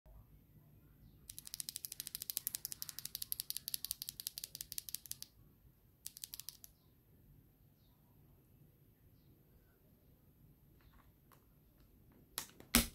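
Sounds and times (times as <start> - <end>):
typing on mechanical keyboard: 1.3 - 5.3, 6.0 - 6.7.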